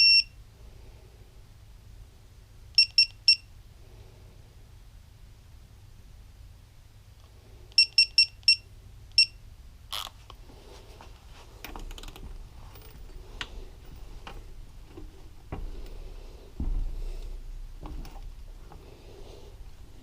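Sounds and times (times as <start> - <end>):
torque wrench beeping: 7.8 - 8.6.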